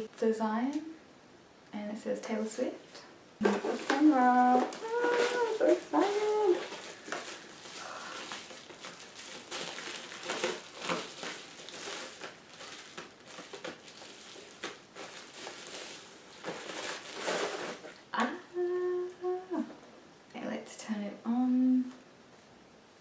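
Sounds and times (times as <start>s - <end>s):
person humming: 3.4s - 6.8s, 18.2s - 19.8s
packaging crinkling and rustling: 3.4s - 18.1s.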